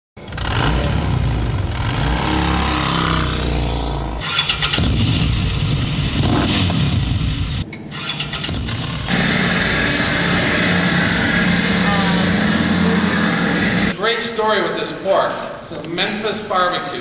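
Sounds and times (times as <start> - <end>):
motorcycle engine revving: 0.2 - 14.0.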